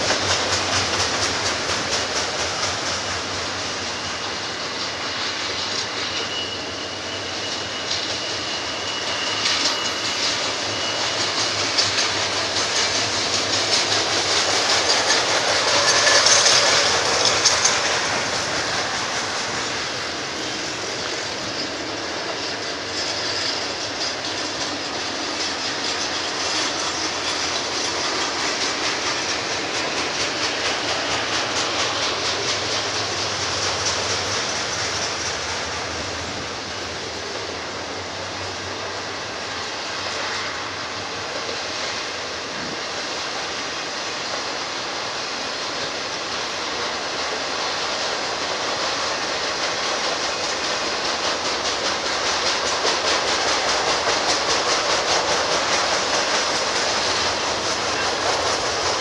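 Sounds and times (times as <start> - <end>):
high wheel squeal: 0.0 - 44.5
freight train wheels clicking: 0.0 - 59.0.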